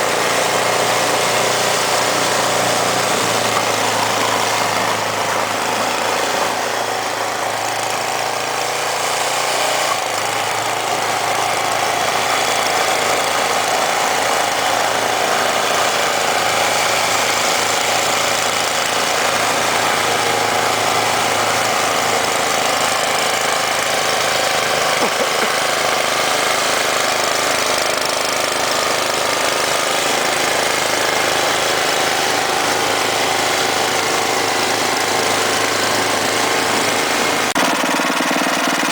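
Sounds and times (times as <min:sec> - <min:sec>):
snowblower engine running loud: 0:00.0 - 0:38.9.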